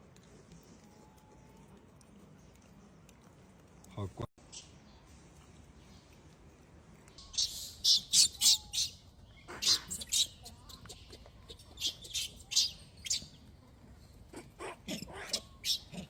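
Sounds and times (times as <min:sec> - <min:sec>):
monkey screaming: 0:07.8 - 0:08.9, 0:09.5 - 0:10.8, 0:14.3 - 0:16.0.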